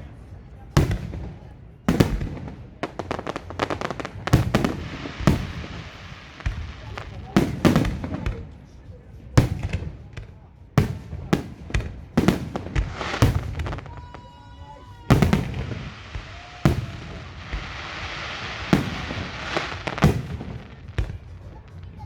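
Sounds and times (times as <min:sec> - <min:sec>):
firework shells booming: 0:00.8 - 0:08.4, 0:09.4 - 0:14.2, 0:14.9 - 0:21.6
firework crackling hiss: 0:02.0 - 0:08.2, 0:12.2 - 0:22.0
firework whistling: 0:12.2 - 0:22.0.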